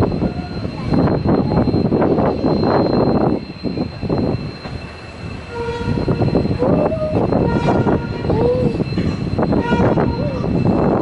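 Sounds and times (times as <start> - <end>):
held tones rising in pitch: 5.9 - 11.0.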